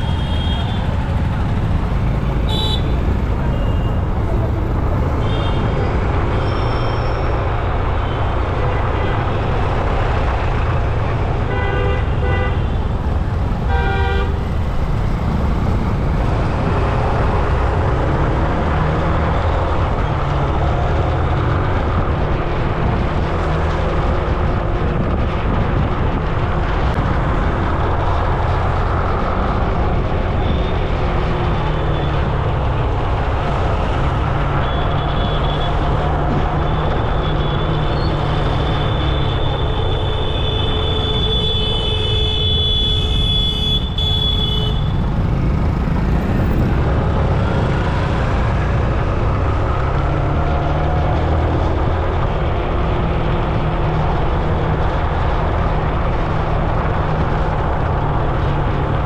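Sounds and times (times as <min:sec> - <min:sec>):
loud road traffic rumble: 0:00.0 - 0:59.0
vehicle horn honking: 0:02.5 - 0:04.0, 0:40.3 - 0:45.0.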